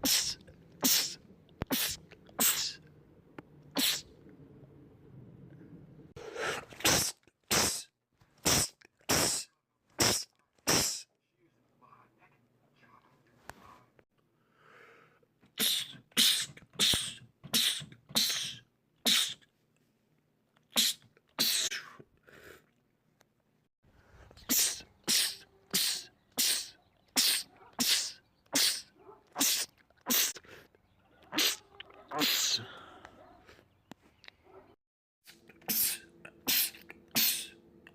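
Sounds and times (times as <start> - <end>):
man sneezing: 0.0 - 2.8, 3.8 - 4.1, 6.4 - 11.1, 15.6 - 19.5, 20.7 - 22.0, 24.4 - 30.4, 31.3 - 32.9, 35.7 - 37.6.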